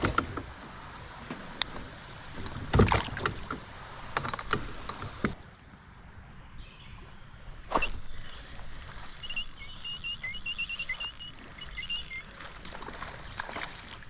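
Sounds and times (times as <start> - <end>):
knocks and bumps on a kayak: 0.0 - 5.4.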